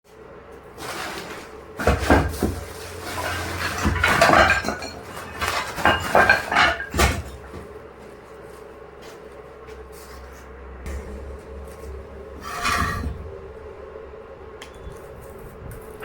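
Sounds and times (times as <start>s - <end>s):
metal parts clanking: 0.8s - 7.6s, 10.9s - 14.0s.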